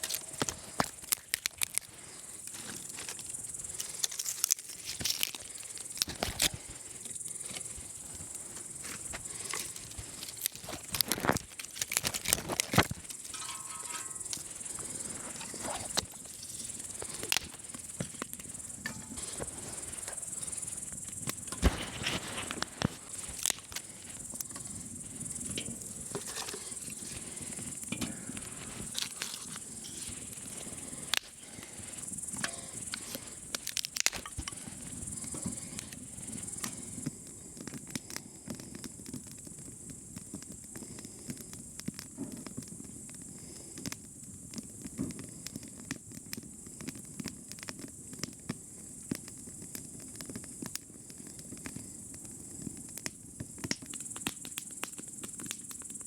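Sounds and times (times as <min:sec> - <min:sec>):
sharp clicks and crackles: 0:00.0 - 0:39.4
crickets chirping: 0:00.0 - 0:56.0.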